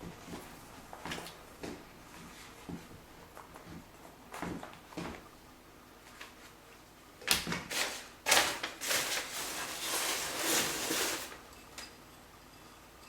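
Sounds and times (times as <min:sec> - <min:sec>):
rustling of box contents: 0:07.7 - 0:11.4.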